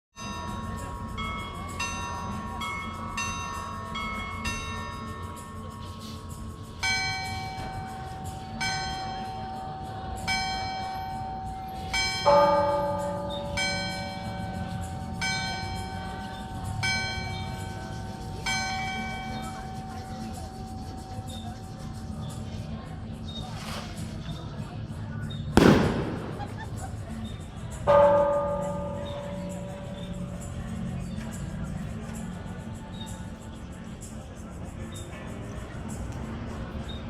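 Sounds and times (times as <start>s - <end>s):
small church bell ringing: 0.2s - 21.4s, 27.9s - 31.0s
deep church bell ringing: 27.9s - 30.5s.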